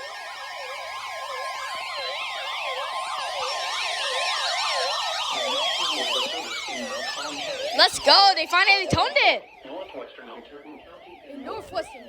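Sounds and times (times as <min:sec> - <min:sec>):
slowly falling tone: 0:00.0 - 0:08.8
steady warning alarm tone: 0:00.0 - 0:12.0
zigzagging electronic siren tones: 0:00.0 - 0:12.0.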